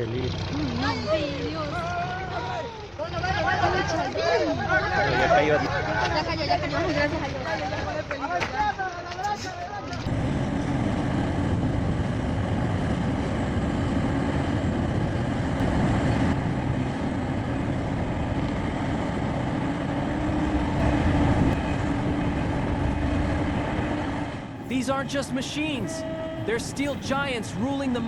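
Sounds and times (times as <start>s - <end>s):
heavy vehicle engine running: 10.0s - 28.0s.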